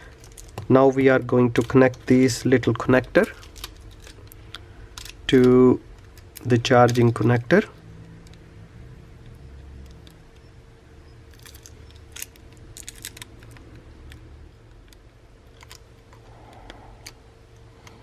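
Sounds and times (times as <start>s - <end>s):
faint steady hum: 0.0s - 18.0s
light clicks of small parts: 2.9s - 8.4s, 11.3s - 18.0s.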